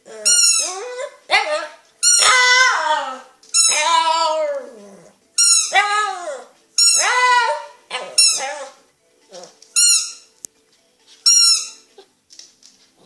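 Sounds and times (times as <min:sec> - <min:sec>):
squeaky dog toy: 0:00.0 - 0:04.5, 0:05.4 - 0:08.8, 0:09.4 - 0:10.3, 0:11.2 - 0:12.1.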